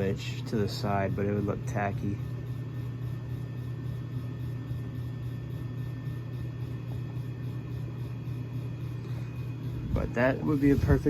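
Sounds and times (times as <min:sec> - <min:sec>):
ceiling fan motor humming: 0:00.0 - 0:11.0.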